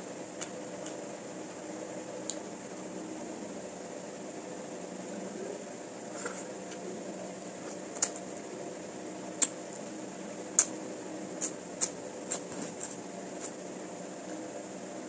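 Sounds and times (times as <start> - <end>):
fan hum: 0.0 - 15.0
person eating with clicks and smacks: 0.4 - 1.0, 7.6 - 8.4, 9.4 - 9.8, 10.5 - 10.8, 11.4 - 13.6.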